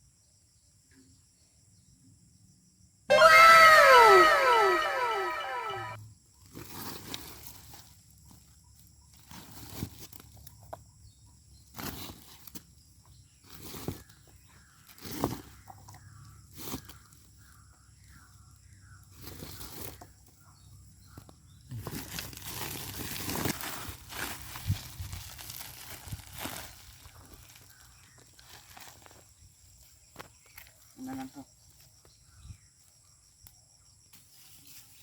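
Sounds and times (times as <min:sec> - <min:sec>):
leafy vines rustling and crackling: 0:06.4 - 0:10.6, 0:21.7 - 0:30.8.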